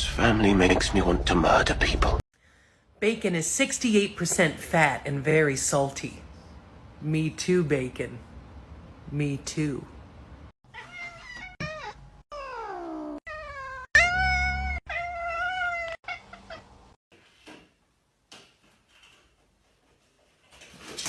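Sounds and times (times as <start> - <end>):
cat meowing: 10.7 - 16.7.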